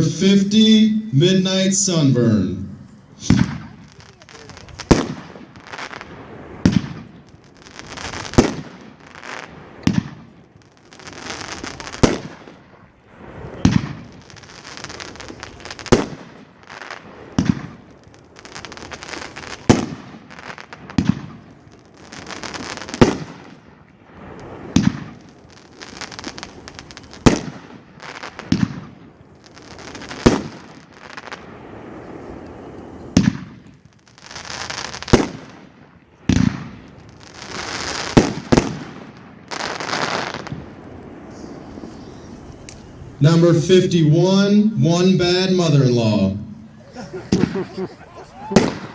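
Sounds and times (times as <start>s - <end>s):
hissing firework spray: 2.8s - 28.8s, 29.4s - 43.2s
firework shot thumps: 3.2s - 3.8s, 35.1s - 35.5s, 47.3s - 47.6s.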